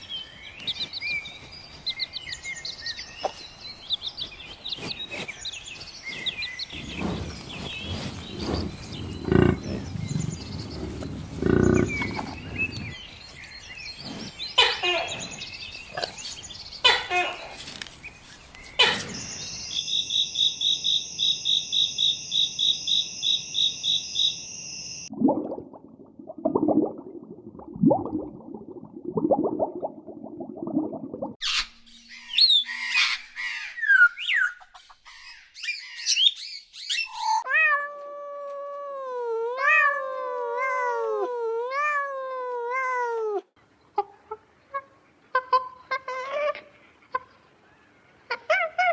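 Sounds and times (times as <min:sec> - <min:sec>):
high chirping bird-like calls: 0:00.6 - 0:13.0, 0:31.4 - 0:37.4
lower animal calls: 0:00.7 - 0:10.5.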